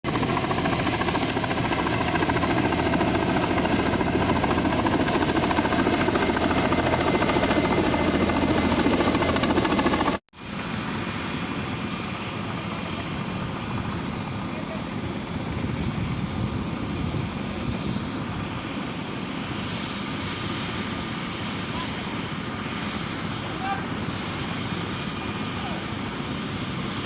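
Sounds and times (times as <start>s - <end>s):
high helicopter whine: 0.0s - 27.0s
helicopter rotor chop: 0.1s - 27.0s.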